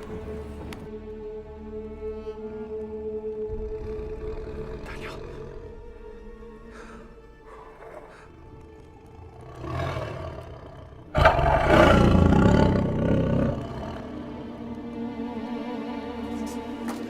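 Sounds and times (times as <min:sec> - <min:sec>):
background music: 0:00.0 - 0:17.0
lion roaring: 0:03.5 - 0:05.8, 0:09.0 - 0:14.6.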